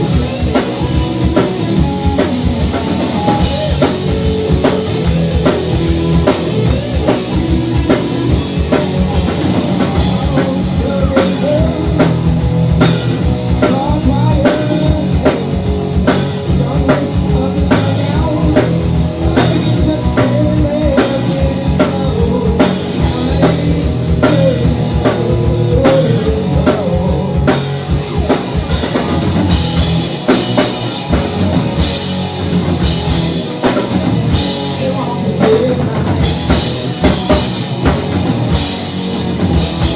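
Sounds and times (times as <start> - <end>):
drum kit beat: 0.0 - 39.9
live rock band playing: 0.0 - 39.9.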